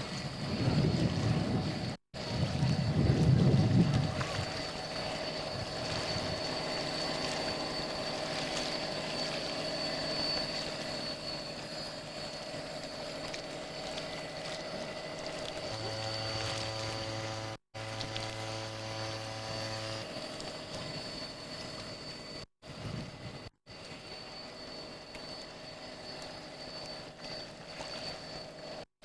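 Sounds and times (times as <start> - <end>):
wind gust on microphone: 0.0 - 4.8, 22.6 - 23.5
water wash: 0.0 - 22.2
deeper hum: 0.0 - 28.9
model boat motor whining: 0.0 - 28.9.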